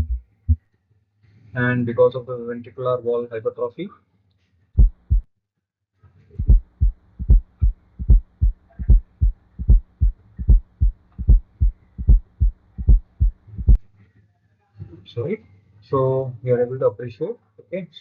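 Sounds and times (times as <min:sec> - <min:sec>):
heartbeat thuds: 0:00.0 - 0:00.6, 0:04.8 - 0:05.3, 0:06.4 - 0:13.8
faint hum: 0:06.4 - 0:13.8.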